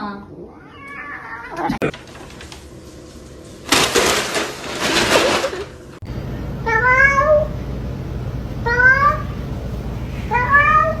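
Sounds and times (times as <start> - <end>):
cat meowing: 0.5 - 1.7.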